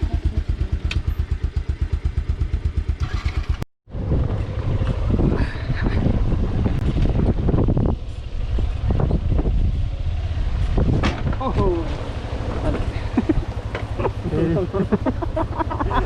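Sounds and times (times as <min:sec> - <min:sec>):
motorcycle engine idling: 0:00.0 - 0:10.4, 0:11.4 - 0:16.0
motorcycle engine riding: 0:00.0 - 0:16.0
wind buffeting microphone: 0:03.9 - 0:11.9.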